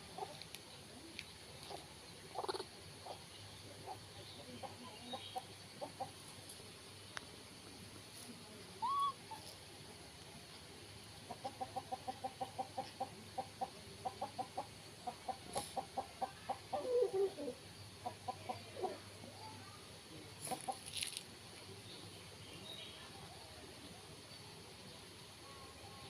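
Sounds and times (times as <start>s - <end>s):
bird clucking calls: 0.0s - 0.4s, 1.6s - 6.3s, 8.8s - 9.5s, 11.2s - 19.1s, 20.4s - 21.0s.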